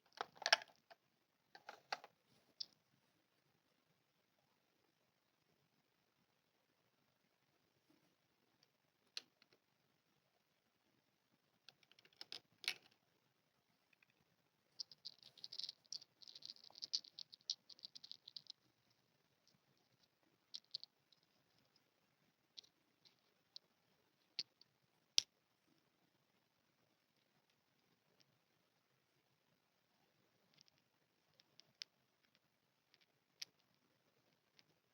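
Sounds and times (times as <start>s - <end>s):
plastic toy pieces clicking: 14.8s - 18.6s.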